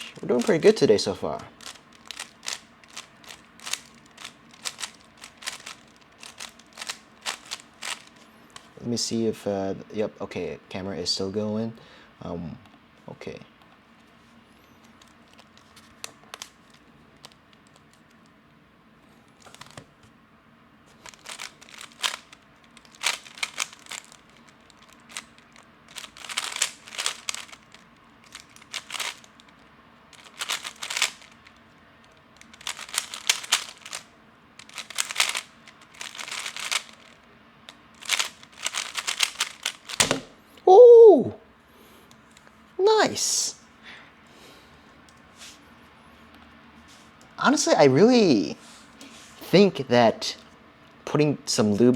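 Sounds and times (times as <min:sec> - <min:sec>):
puzzle cube clicking while turned: 0:00.0 - 0:00.8, 0:01.5 - 0:08.8, 0:14.8 - 0:18.2, 0:19.3 - 0:19.9, 0:21.0 - 0:40.3.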